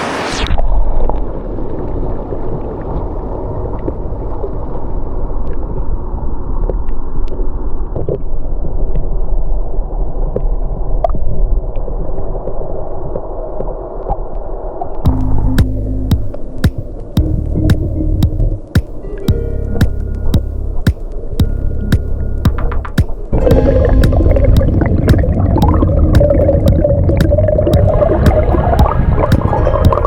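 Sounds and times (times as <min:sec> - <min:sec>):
muffled underwater creek rumble: 0:00.5 - 0:30.0
small underwater clicks: 0:24.5 - 0:30.0.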